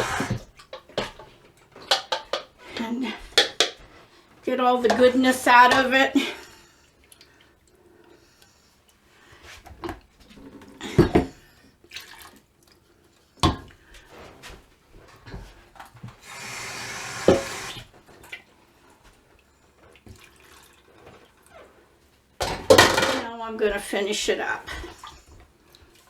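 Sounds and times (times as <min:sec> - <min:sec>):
soup scraped from blender container: 0:00.0 - 0:00.6.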